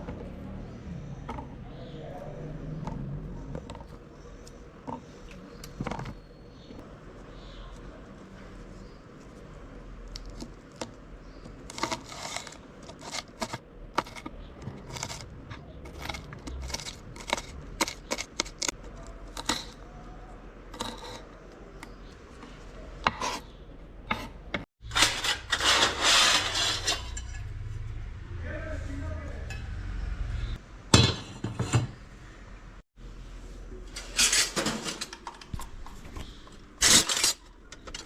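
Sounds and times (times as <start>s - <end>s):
utensils clattering and scraping: 11.5s - 20.0s, 20.7s - 23.5s, 24.1s - 27.7s, 33.9s - 38.0s.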